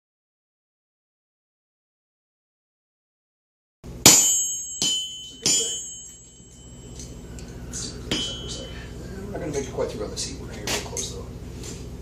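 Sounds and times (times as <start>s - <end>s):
sledgehammer ringing on steel: 4.0s - 7.2s, 8.0s - 9.0s
hammer tapping anvil: 4.1s - 7.2s, 8.1s - 8.9s.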